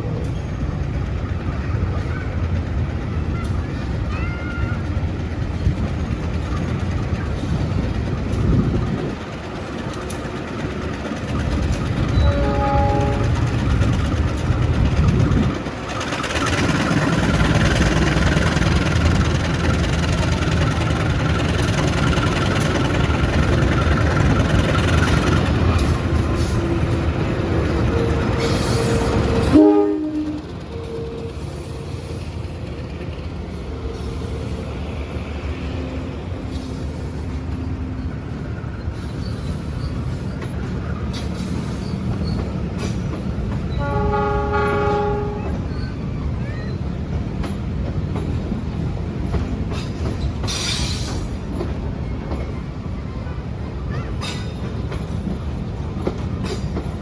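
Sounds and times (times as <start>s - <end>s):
train rumbling past: 0.0s - 57.0s
train horn: 12.1s - 13.6s, 27.8s - 32.2s, 43.7s - 45.7s.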